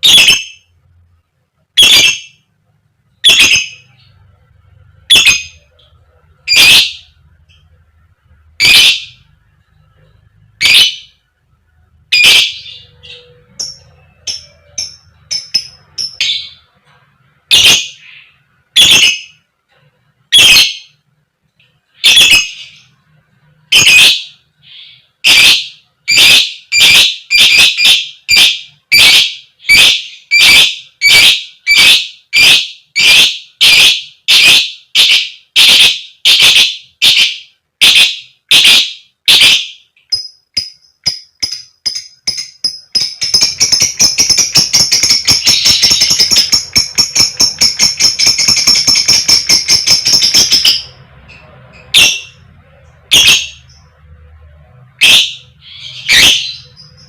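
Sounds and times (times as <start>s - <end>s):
lovebird sharp calls: 0.0s - 0.6s, 3.2s - 4.0s, 23.7s - 52.4s, 53.1s - 53.8s.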